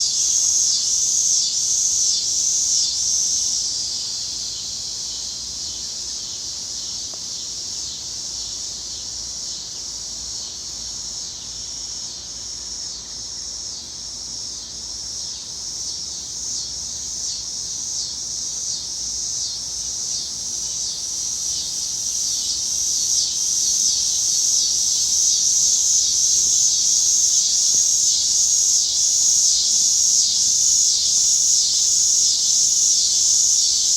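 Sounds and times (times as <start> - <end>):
cicadas buzzing: 0.0 - 33.9.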